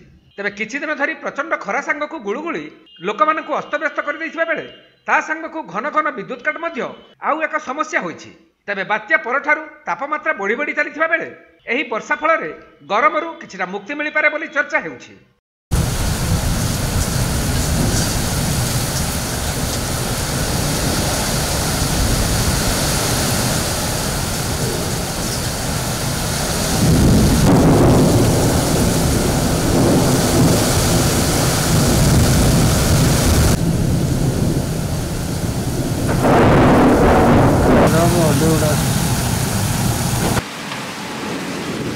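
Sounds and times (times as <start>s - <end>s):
low rumble of thunder: 15.7s - 40.4s
heavy rain pouring: 15.7s - 41.9s.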